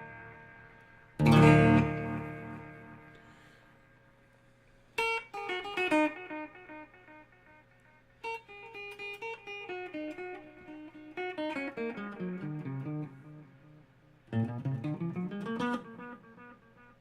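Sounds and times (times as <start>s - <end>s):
guitar single-note runs: 0.0s - 3.1s.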